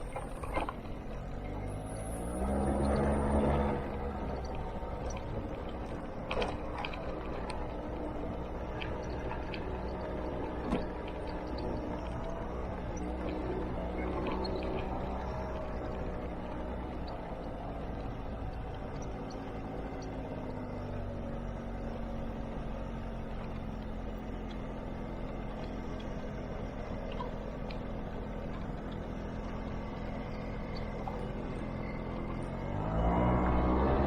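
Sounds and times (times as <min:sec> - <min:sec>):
scooter engine revving: 0:26.6 - 0:34.0.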